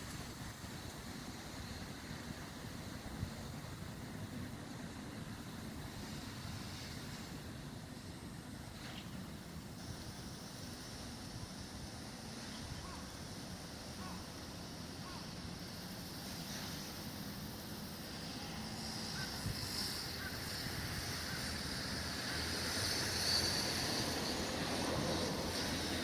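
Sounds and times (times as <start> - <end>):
wind gusting across microphone: 16.2 - 26.0.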